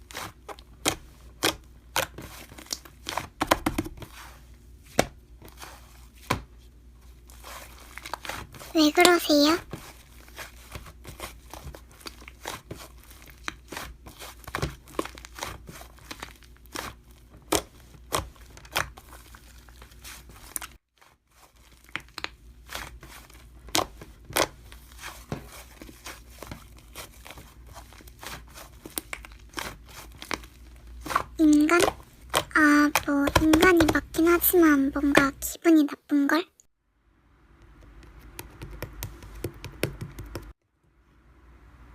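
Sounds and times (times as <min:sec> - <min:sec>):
slime crackling and popping: 0:00.0 - 0:03.8, 0:10.1 - 0:20.8, 0:21.5 - 0:34.5.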